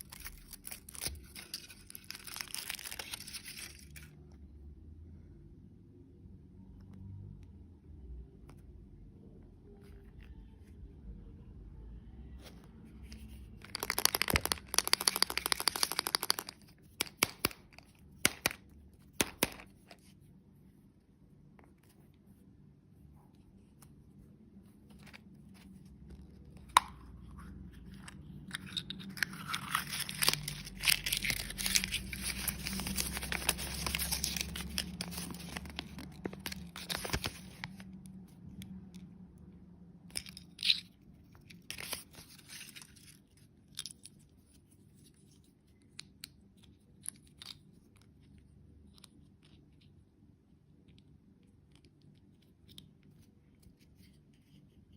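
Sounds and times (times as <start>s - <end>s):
plastic packaging crinkling: 0.0s - 4.2s, 13.1s - 18.6s, 28.4s - 37.9s.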